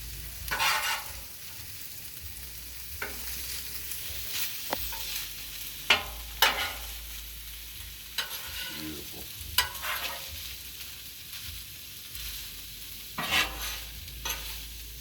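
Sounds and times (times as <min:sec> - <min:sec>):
rice sizzling on a griddle: 0:00.0 - 0:15.0
scrapes and knocks on steel: 0:00.5 - 0:01.2, 0:13.2 - 0:14.6.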